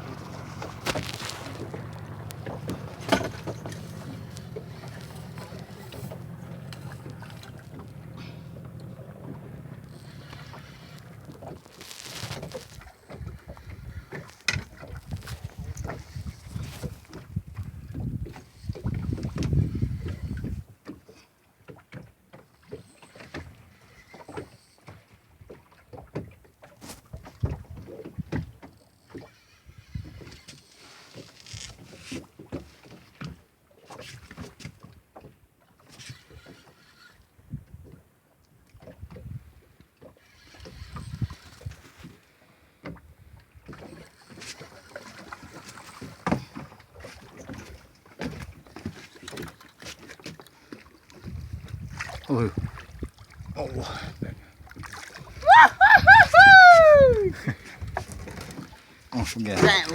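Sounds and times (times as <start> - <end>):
boat hull and gear knocking: 0.0 - 11.7.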